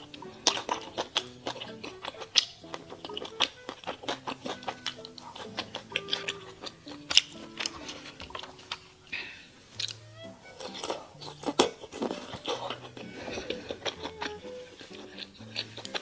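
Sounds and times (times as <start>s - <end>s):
chewing clicks: 0.0s - 9.2s, 9.8s - 10.0s, 10.6s - 16.0s
quiet background music: 0.0s - 16.0s.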